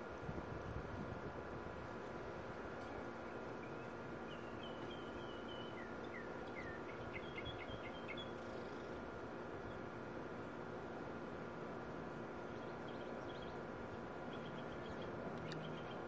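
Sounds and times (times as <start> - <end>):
low hum and hiss: 0.0 - 16.0
small bird singing: 3.1 - 9.0, 12.4 - 16.0.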